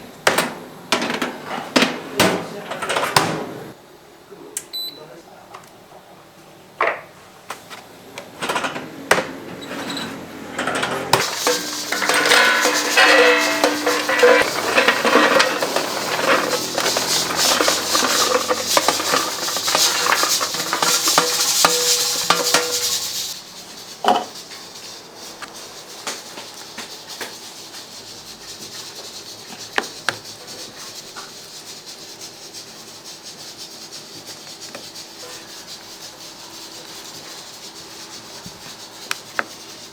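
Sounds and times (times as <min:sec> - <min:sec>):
metal clicking and knocking: 0:10.6 - 0:23.4.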